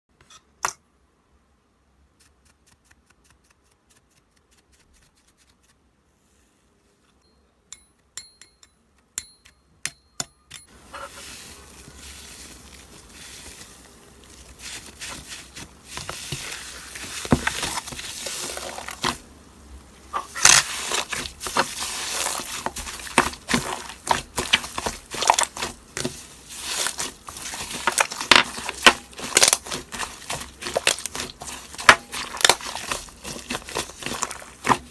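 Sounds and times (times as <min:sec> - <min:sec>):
crackly rustling in paper bedding: 0:10.7 - 0:34.9.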